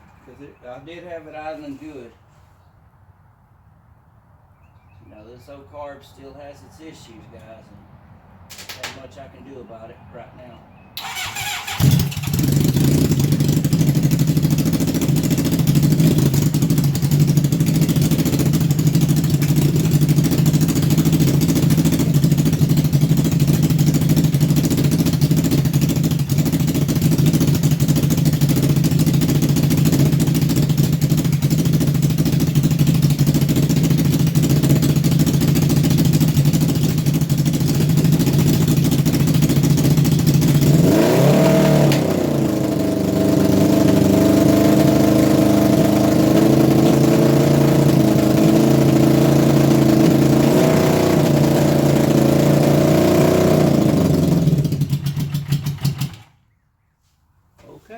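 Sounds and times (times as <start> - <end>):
motorcycle engine idling: 11.0 - 41.2, 41.9 - 56.3.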